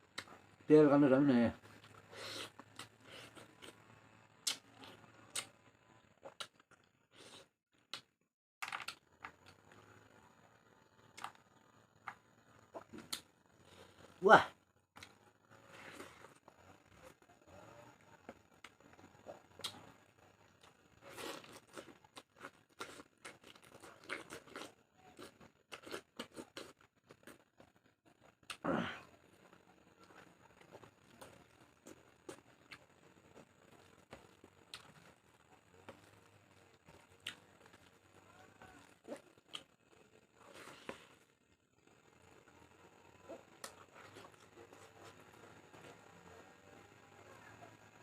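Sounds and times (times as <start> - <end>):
chewing and food handling: 1.6 - 7.5, 8.6 - 14.2, 15.0 - 47.6
person chewing and tearing meat: 21.0 - 27.4.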